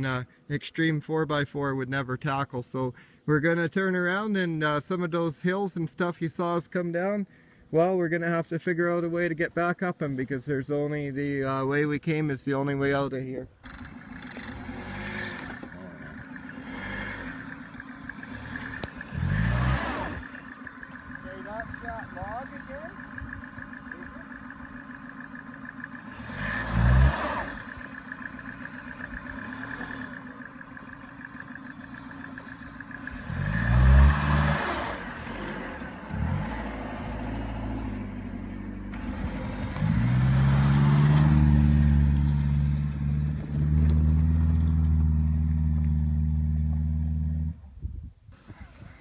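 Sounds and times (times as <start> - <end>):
rushes of noise: 13.6 - 45.0
car engine revving: 13.6 - 47.6.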